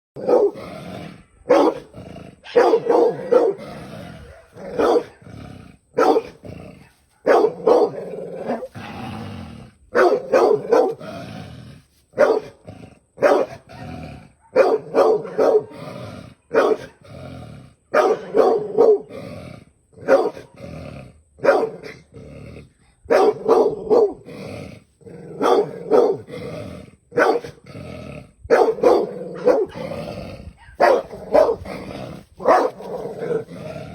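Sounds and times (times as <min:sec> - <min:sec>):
dog barking: 0:00.2 - 0:00.6, 0:01.4 - 0:05.3, 0:06.0 - 0:08.8, 0:09.9 - 0:11.0, 0:12.2 - 0:12.6, 0:13.2 - 0:15.8, 0:16.5 - 0:17.0, 0:17.9 - 0:19.1, 0:20.0 - 0:20.5, 0:21.4 - 0:22.0, 0:23.1 - 0:24.2, 0:25.3 - 0:26.3, 0:27.1 - 0:27.6, 0:28.5 - 0:30.0, 0:30.6 - 0:33.5
dog growling: 0:00.2 - 0:12.0, 0:15.2 - 0:33.9.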